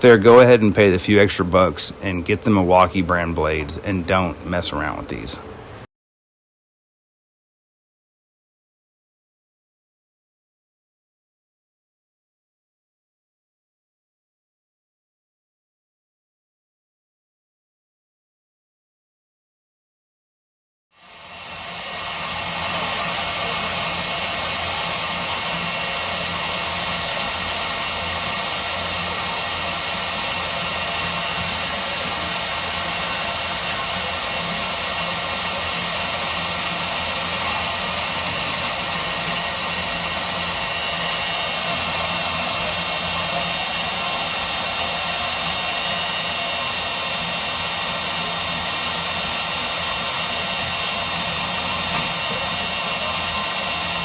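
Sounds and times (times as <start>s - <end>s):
bandsaw cutting aluminum: 21.2s - 54.0s.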